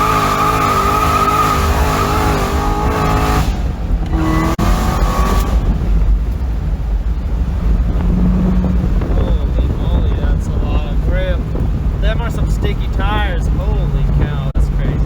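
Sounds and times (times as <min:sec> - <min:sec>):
car engine at full throttle: 0:00.0 - 0:15.0
wind noise: 0:00.0 - 0:15.0.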